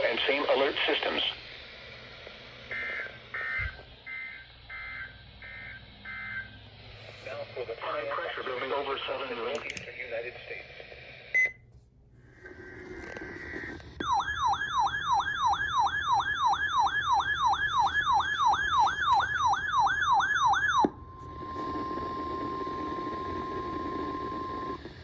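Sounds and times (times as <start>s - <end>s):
electronic siren-like warble: 2.7s - 6.6s, 13.6s - 24.8s
steady single alarm tone: 2.7s - 6.6s, 14.0s - 24.8s.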